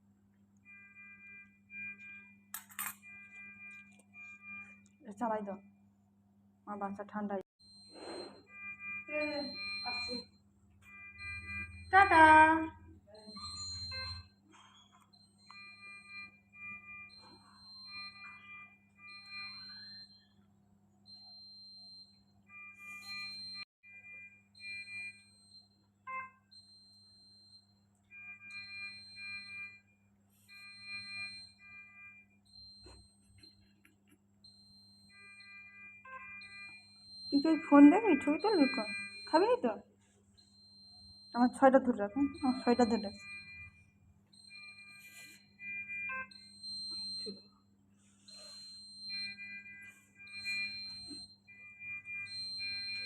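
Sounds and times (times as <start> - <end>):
electronic beeping melody: 7.7 - 10.3, 13.2 - 20.4, 34.5 - 39.8, 40.4 - 47.4, 48.3 - 53.0.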